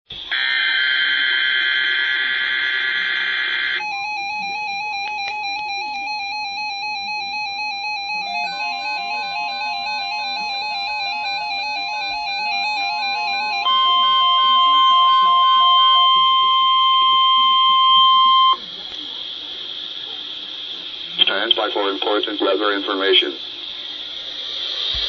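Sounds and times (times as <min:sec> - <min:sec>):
beeping synthesizer tune: 0:03.8 - 0:18.6
lower synthesizer line: 0:03.8 - 0:18.7.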